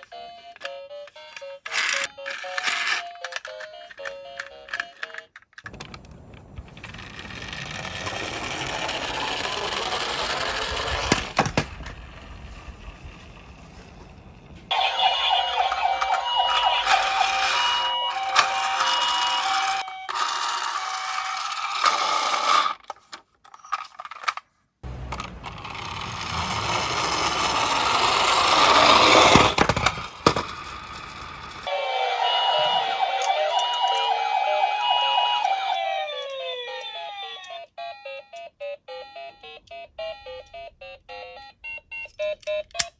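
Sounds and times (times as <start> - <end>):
toy electronic siren beeping: 0.0 - 5.3, 7.3 - 11.1, 14.7 - 22.3, 31.2 - 42.9
toy cars rolling down a slope: 0.6 - 37.6.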